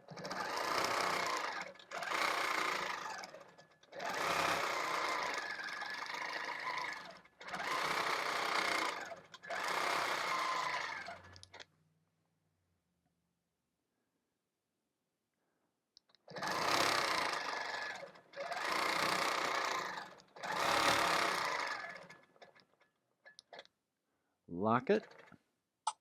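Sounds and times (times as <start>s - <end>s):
quilting machine stitching: 0.0s - 11.6s, 16.3s - 22.8s, 25.0s - 25.3s.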